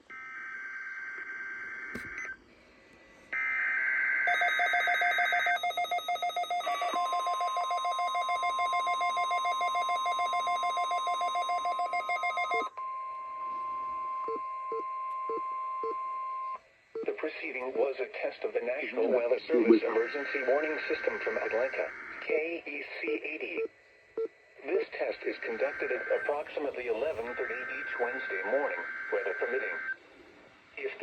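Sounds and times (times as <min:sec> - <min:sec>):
steady warning alarm tone: 0:03.4 - 0:12.7
rapid pulsing beep: 0:04.3 - 0:12.7.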